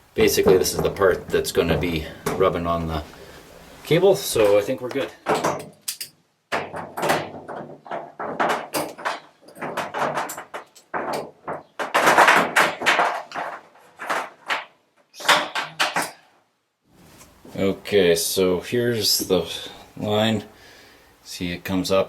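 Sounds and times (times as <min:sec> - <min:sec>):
knocks and thuds of building work: 0:00.2 - 0:03.1, 0:04.4 - 0:05.9, 0:06.5 - 0:16.4.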